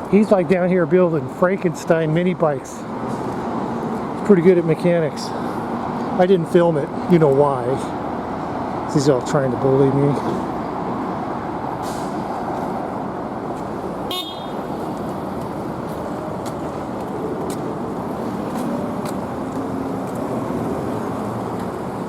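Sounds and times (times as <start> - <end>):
road traffic noise: 0.0 - 22.0
faint horn-like tones: 14.1 - 14.6.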